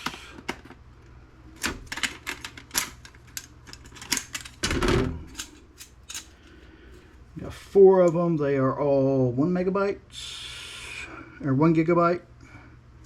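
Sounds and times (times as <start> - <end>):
plastic rattle: 1.6 - 4.8
plastic clicks and clatter: 1.6 - 6.3.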